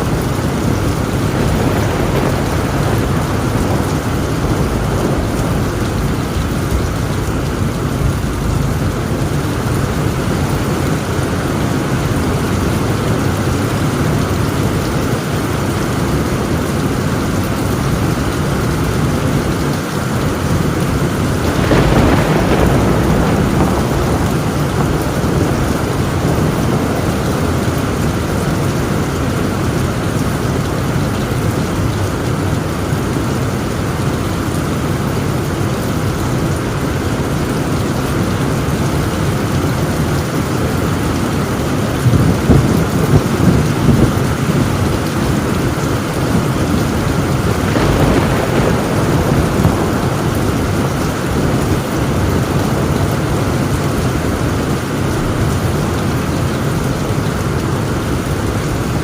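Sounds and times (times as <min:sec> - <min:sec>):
heavy rain on a tin roof: 0:00.0 - 0:59.0
thunder rumbling: 0:00.0 - 0:59.0.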